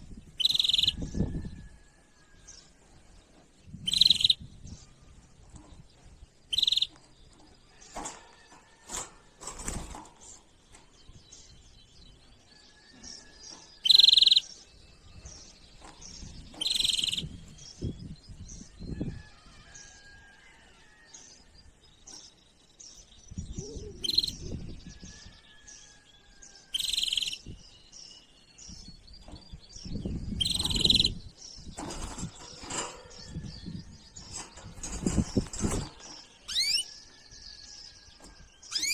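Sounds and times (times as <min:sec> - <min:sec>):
small birds chirping: 0:00.0 - 0:20.6, 0:21.2 - 0:38.9
low thumping or rustling: 0:31.6 - 0:36.5.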